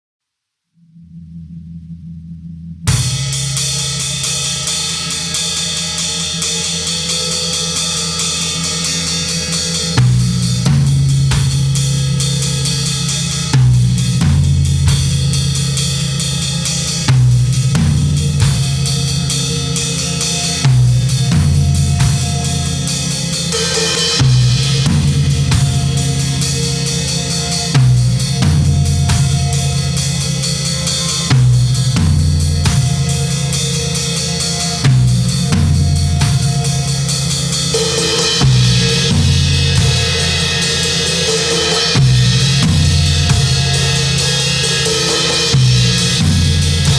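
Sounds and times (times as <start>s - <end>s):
drum kit with cymbals: 2.8s - 46.9s
low drone: 9.6s - 46.9s
low bass figure: 10.0s - 44.8s, 45.4s - 46.9s.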